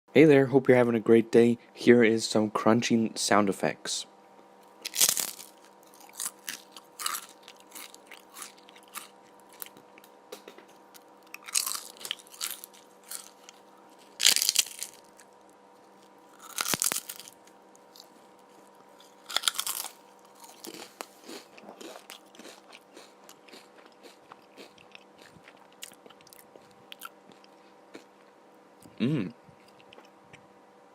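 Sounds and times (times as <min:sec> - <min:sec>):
person chewing crunchy food: 0:04.8 - 0:28.4, 0:29.6 - 0:30.4.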